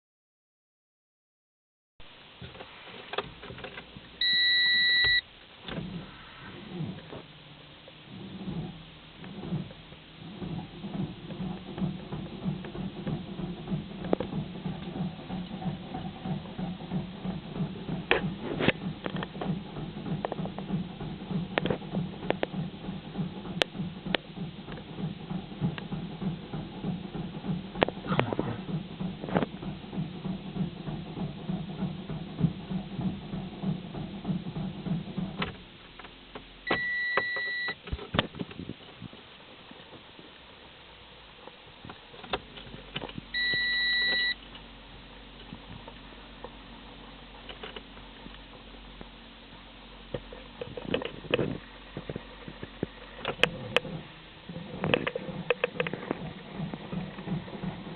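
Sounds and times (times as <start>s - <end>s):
engine cranking by starter: 3.0s - 38.7s, 42.2s - 49.0s, 50.0s - 57.9s
electronic beep: 4.2s - 5.2s, 36.7s - 37.8s, 43.4s - 44.4s.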